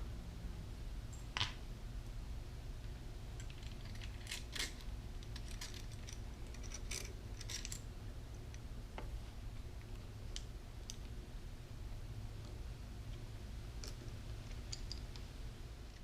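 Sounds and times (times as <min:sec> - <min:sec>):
small parts clicking and clattering: 0:03.3 - 0:07.9, 0:13.8 - 0:15.3.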